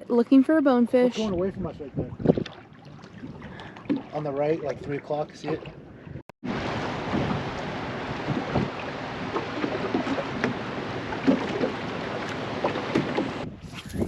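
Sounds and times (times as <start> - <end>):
wind noise on microphone: 1.1 - 14.0
water knocking against hull: 1.4 - 5.8, 6.5 - 13.4.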